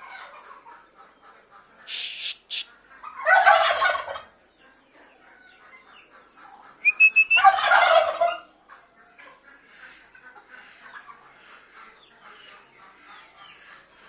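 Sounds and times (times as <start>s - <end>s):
turkey gobbling: 0.0s - 14.0s
brief high hiss: 1.9s - 2.7s
short high whistle: 1.9s - 2.7s.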